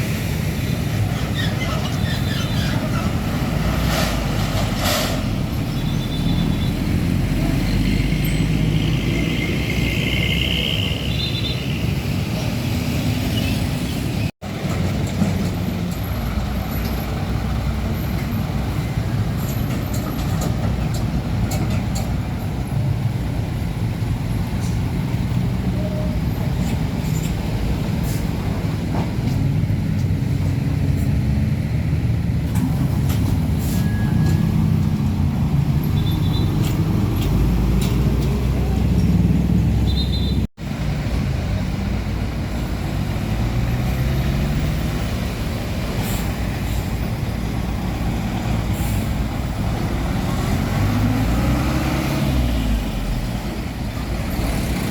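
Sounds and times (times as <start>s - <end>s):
road traffic noise: 0.0s - 54.9s
diesel truck engine drone: 13.9s - 54.9s.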